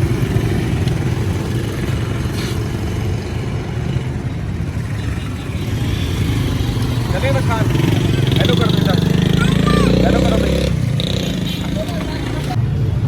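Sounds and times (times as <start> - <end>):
road noise: 0.0 - 13.0
vehicle engine running: 5.2 - 12.6.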